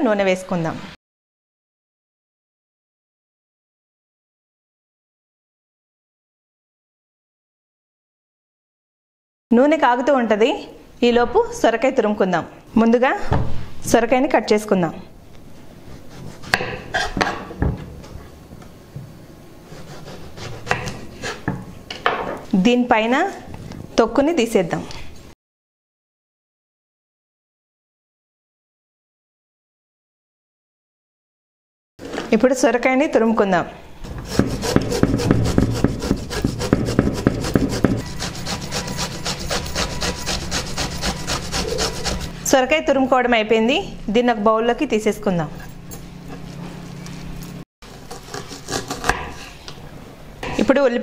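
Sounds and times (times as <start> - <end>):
gourd rasping on metal grater: 34.1 - 42.5, 47.9 - 49.4
knife knocking on chopping board: 34.3 - 38.0.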